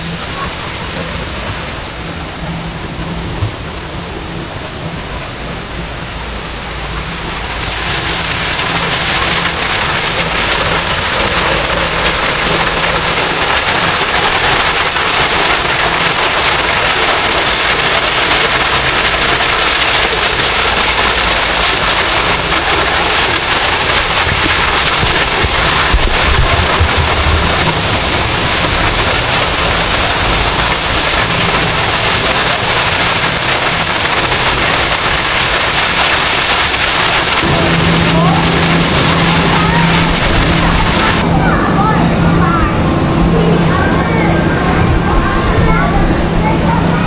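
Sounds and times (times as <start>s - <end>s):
loud steady rushing noise: 0.0s - 47.0s.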